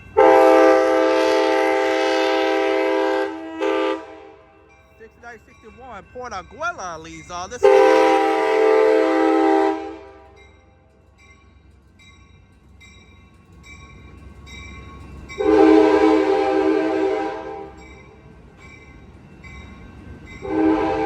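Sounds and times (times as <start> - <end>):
train air horn blasts: 0.2 - 4.7, 7.6 - 10.4, 15.4 - 17.7, 20.4 - 21.0.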